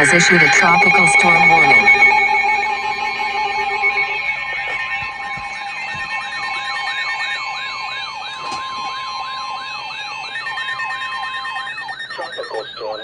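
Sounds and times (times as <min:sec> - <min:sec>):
high warble: 0:00.0 - 0:06.8
emergency alert tone: 0:00.0 - 0:13.0
fast electronic siren: 0:00.0 - 0:13.0.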